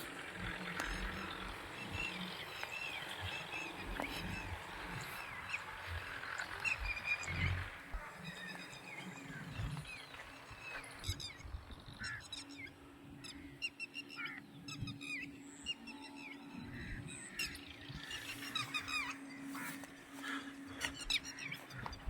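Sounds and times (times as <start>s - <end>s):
faint low hum: 0.0s - 13.6s
birds chirping: 0.0s - 22.0s.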